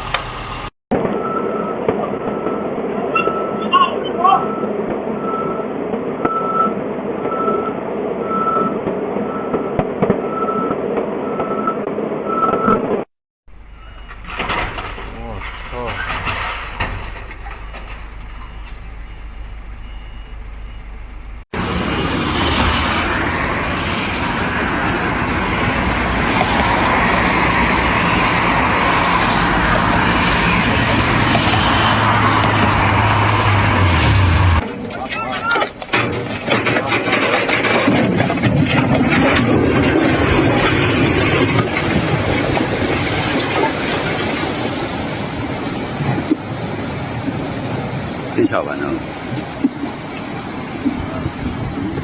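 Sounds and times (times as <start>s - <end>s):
reversing alarm beeping: 1.0s - 12.9s, 13.6s - 14.3s, 17.6s - 21.4s
engine running: 16.7s - 52.0s.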